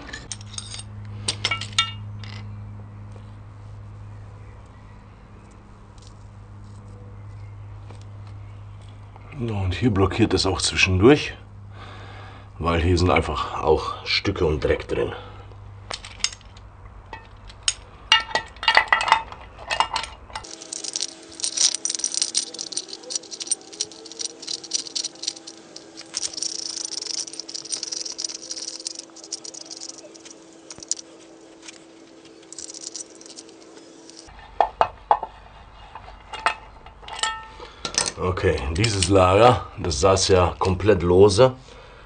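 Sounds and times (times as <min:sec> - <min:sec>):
metal tools rattling and clinking: 0:00.0 - 0:02.5, 0:15.9 - 0:34.3, 0:36.3 - 0:39.2
faint steady hum: 0:00.0 - 0:34.5.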